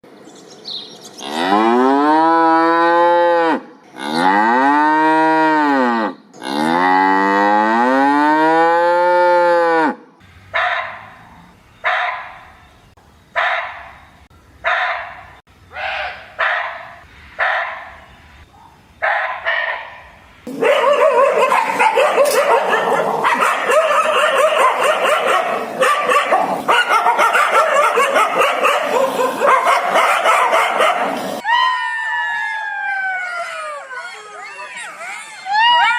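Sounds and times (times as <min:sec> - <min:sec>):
cow mooing: 0:01.2 - 0:10.0
dog barking: 0:10.6 - 0:11.2, 0:11.8 - 0:12.4, 0:13.4 - 0:13.9, 0:14.6 - 0:15.3, 0:16.4 - 0:18.0, 0:19.0 - 0:31.2
many dogs barking and yipping: 0:19.0 - 0:31.4, 0:32.9 - 0:35.9.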